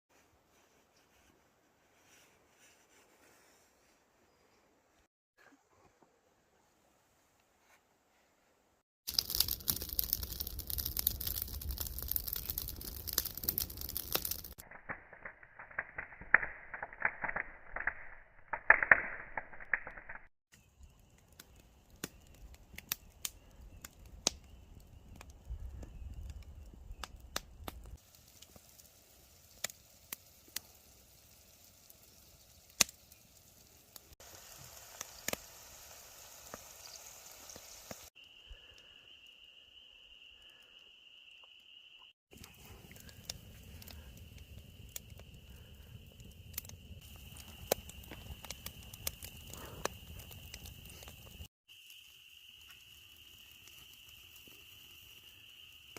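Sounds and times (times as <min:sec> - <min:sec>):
wood fire crackling and popping: 0:09.1 - 0:38.1, 0:42.3 - 0:55.9.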